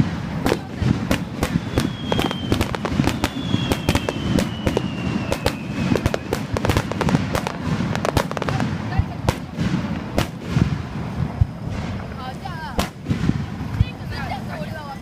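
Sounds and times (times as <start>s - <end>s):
fireworks bangs and crackles: 0.0s - 15.0s
falling high whistle: 1.4s - 6.5s.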